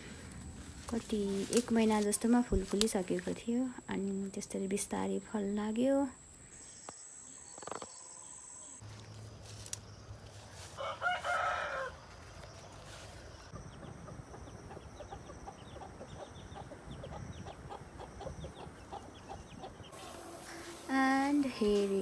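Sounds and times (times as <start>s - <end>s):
rooster crowing: 10.6s - 13.0s, 20.0s - 21.0s
short faint calls: 15.5s - 22.0s.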